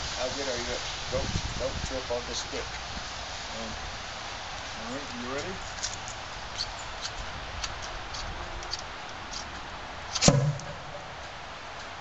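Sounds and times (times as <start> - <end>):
potato cannon bang: 10.2 - 11.1.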